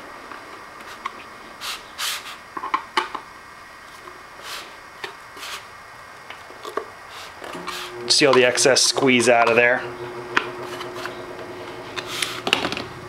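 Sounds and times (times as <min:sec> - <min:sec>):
furniture joint scraping: 0:10.4 - 0:12.8.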